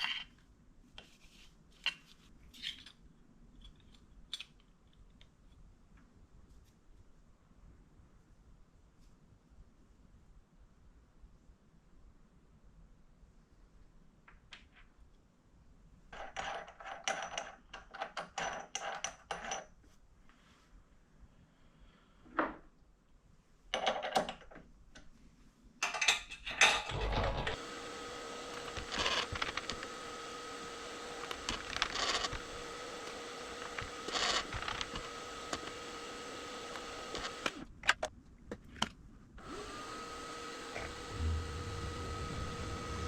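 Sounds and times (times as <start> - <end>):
milling machine motor humming: 26.9 - 37.6, 39.4 - 43.0.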